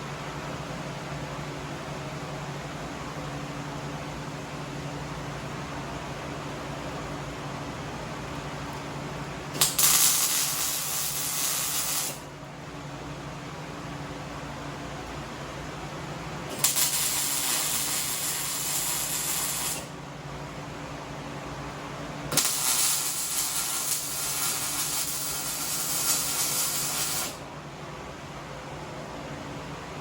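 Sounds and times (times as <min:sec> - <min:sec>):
steady low hum: 0:00.0 - 0:30.0
hissing crackling welding arc: 0:09.6 - 0:12.3, 0:16.5 - 0:19.9, 0:22.3 - 0:27.4.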